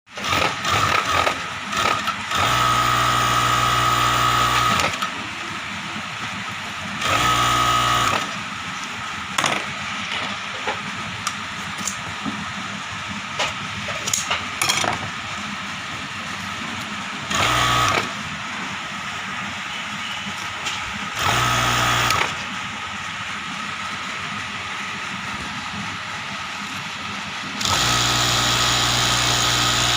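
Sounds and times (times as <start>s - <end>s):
sewing machine stitching: 0.1s - 5.1s, 17.3s - 18.1s, 21.2s - 22.4s, 27.6s - 29.9s.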